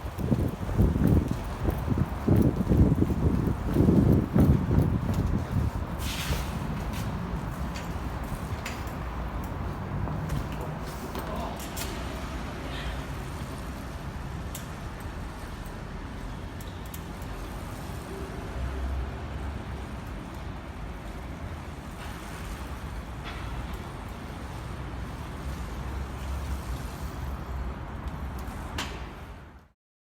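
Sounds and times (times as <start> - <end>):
wind rumbling on microphone: 0.0 - 11.2
road noise: 0.0 - 29.7.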